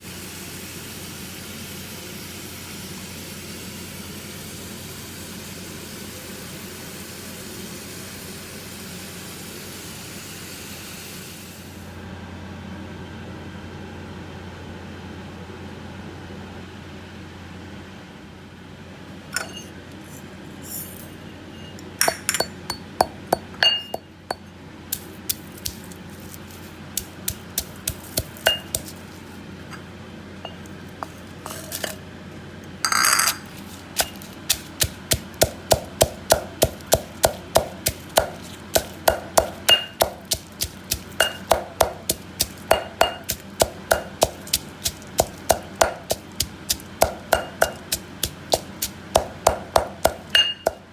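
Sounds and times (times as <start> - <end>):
dishes clinking: 19.3 - 19.8, 20.7 - 24.5, 28.4 - 28.9, 30.5 - 32.0, 32.8 - 34.3, 39.7 - 40.2, 41.2 - 42.0, 42.7 - 44.2, 50.3 - 50.8
knife chopping on cutting board: 22.3 - 24.0, 25.0 - 29.2, 33.4 - 50.9.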